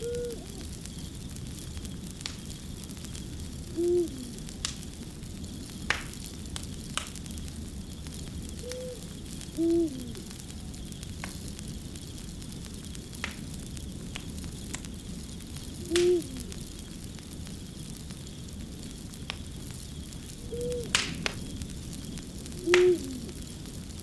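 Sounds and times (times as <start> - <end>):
owl hooting: 0.0 - 0.7, 3.7 - 4.4, 8.6 - 10.6, 15.8 - 16.6, 20.4 - 20.9, 22.6 - 23.4
wood fire crackling: 0.0 - 24.0.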